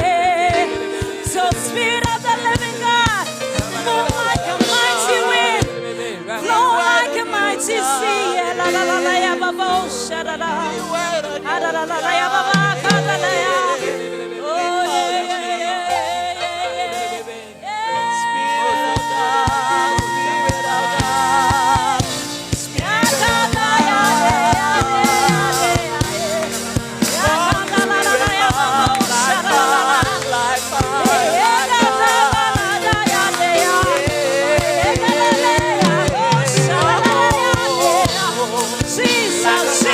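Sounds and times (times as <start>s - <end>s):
man singing wordless vocals: 0.0s - 39.9s
sustained keyboard chords: 0.0s - 39.9s
low drum beat: 12.6s - 13.5s, 19.0s - 39.9s.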